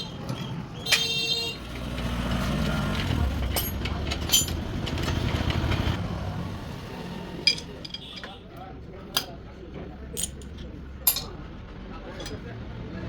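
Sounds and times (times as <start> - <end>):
motorcycle engine rumbling: 0.0 - 8.7.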